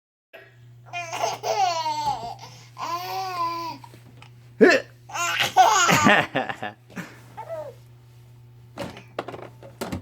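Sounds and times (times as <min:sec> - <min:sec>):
steady low hum: 0:00.4 - 0:10.0
baby babbling: 0:00.9 - 0:03.8, 0:07.4 - 0:07.8.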